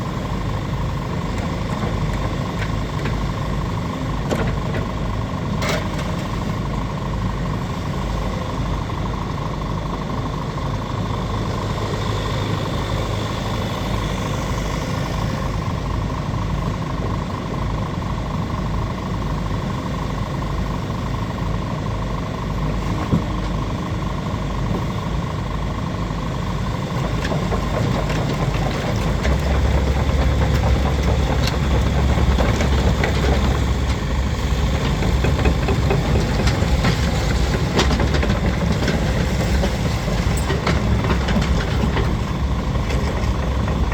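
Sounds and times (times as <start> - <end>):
excavator diesel engine idling: 0.0 - 43.9.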